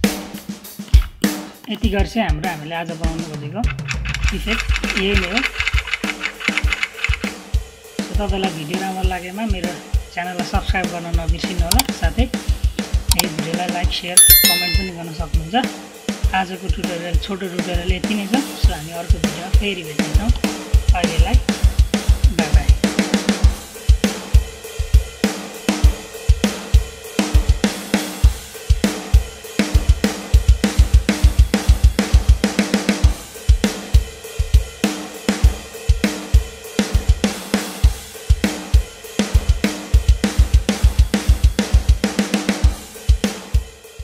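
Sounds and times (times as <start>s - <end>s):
held synth tone: 14.2s - 14.9s
drum kit beat: 34.6s - 43.7s.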